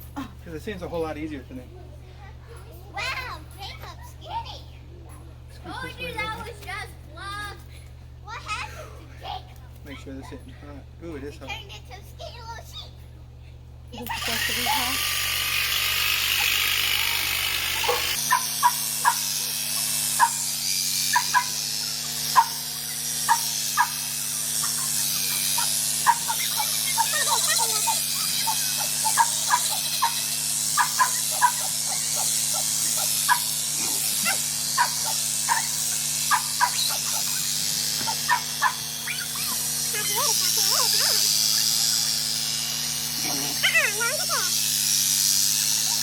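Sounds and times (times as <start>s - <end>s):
electric sheep shears humming: 0.0s - 46.0s.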